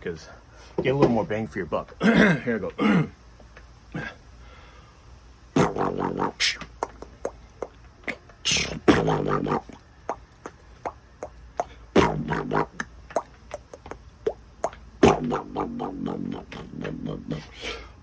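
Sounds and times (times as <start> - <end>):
man beatboxing: 5.6 - 7.4, 8.1 - 11.0, 11.6 - 17.6.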